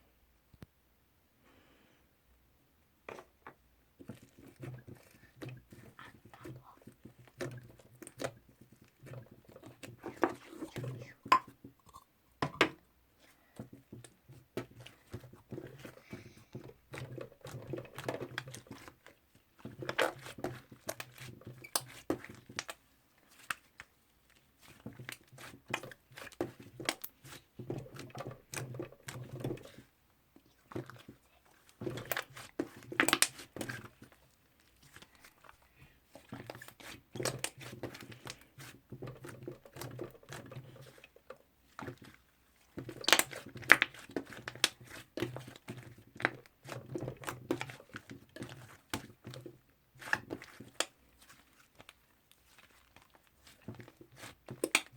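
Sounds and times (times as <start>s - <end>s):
slime squishing with sticky clicks: 13.6s - 54.9s.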